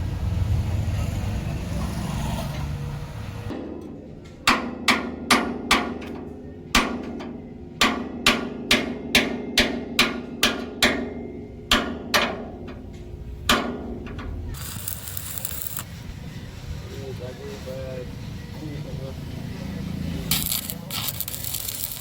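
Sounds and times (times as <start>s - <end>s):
hammer striking metal: 3.5s - 15.8s.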